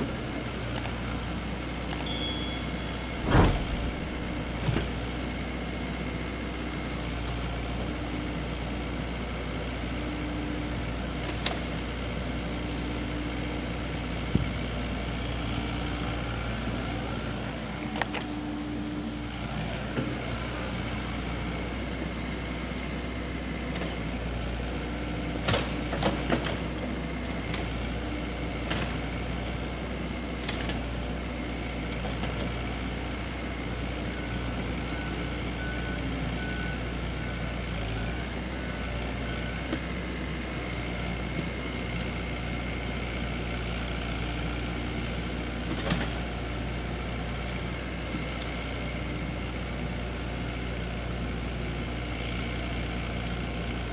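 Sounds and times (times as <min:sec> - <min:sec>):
excavator engine running: 0:00.0 - 0:53.9
machine knocks: 0:03.0 - 0:04.5.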